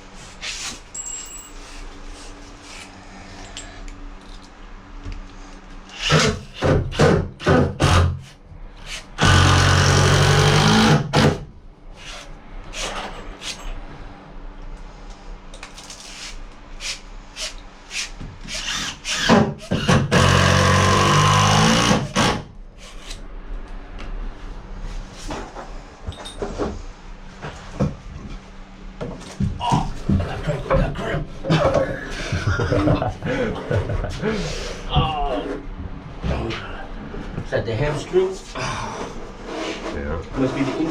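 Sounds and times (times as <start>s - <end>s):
power drill running: 8.8s - 11.4s, 18.5s - 22.4s.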